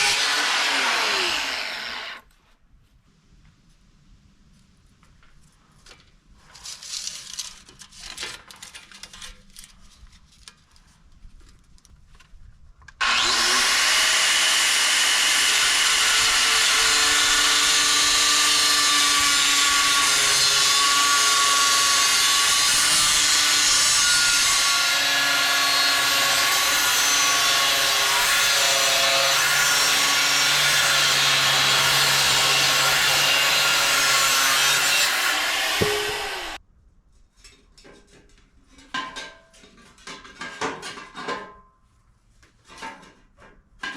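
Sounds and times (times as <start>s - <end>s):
angle grinder grinding steel: 0.0s - 2.2s, 13.0s - 36.6s.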